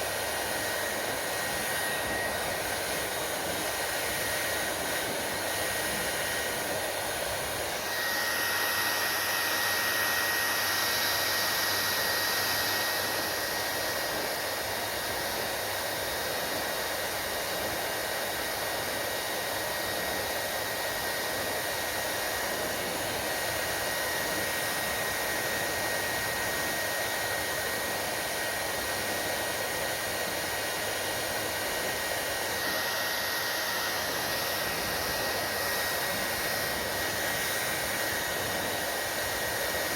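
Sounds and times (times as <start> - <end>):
hair dryer running: 0.0 - 39.9
thin high whine: 0.1 - 14.4.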